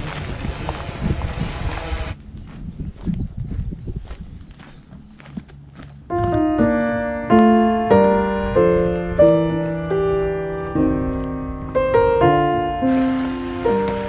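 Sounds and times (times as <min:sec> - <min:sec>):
slow piano music: 0:06.1 - 0:14.0
steady hiss: 0:12.7 - 0:14.0.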